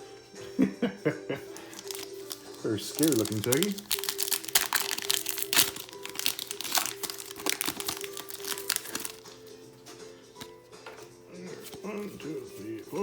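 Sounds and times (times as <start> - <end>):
foil wrapper crinkling and tearing: 1.6 - 9.4.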